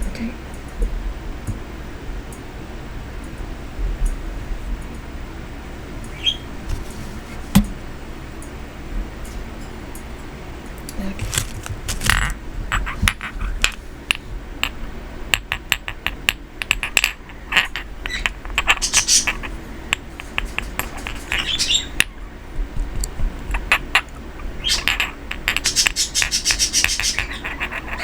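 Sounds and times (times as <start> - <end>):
small hard objects clicking: 11.2 - 13.8, 14.6 - 22.2, 23.0 - 28.0.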